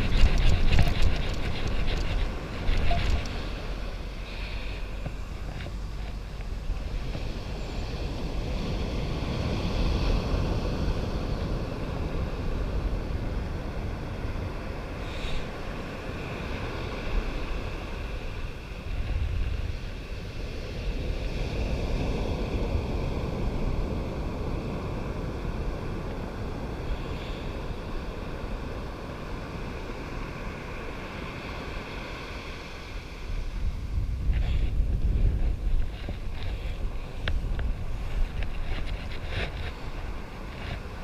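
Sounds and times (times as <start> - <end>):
surf washing: 0.0 - 41.0
wind buffeting the microphone: 0.0 - 41.0.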